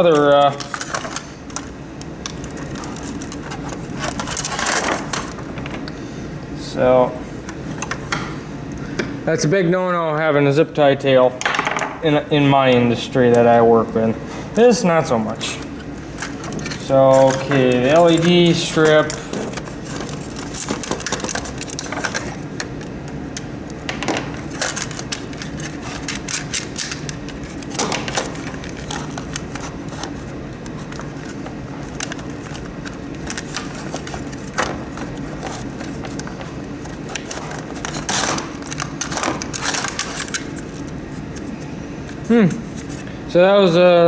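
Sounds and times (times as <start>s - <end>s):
steady low hum: 0.0s - 44.0s
plastic parts clicking and knocking: 16.2s - 22.9s, 23.9s - 40.6s.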